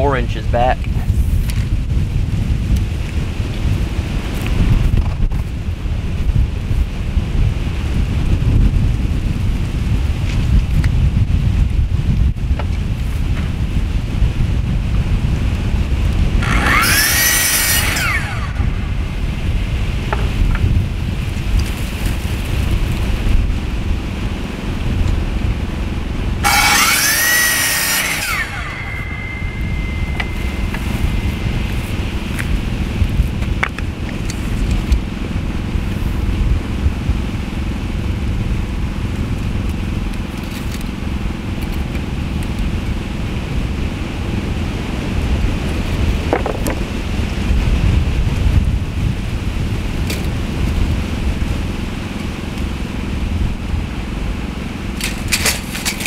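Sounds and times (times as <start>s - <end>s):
wind rumble on microphone: 0.0s - 56.0s
power saw cutting wood: 16.2s - 19.1s, 26.4s - 32.9s.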